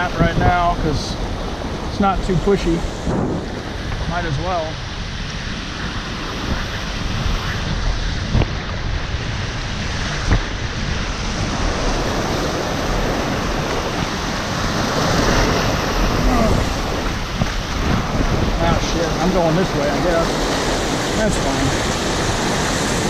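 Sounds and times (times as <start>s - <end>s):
wind on microphone: 0.0s - 23.0s
whitewater rapids rushing: 9.3s - 23.0s.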